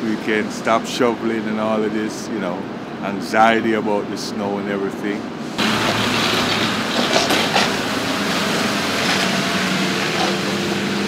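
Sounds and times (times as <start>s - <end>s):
heavy vehicle running: 5.4s - 11.0s.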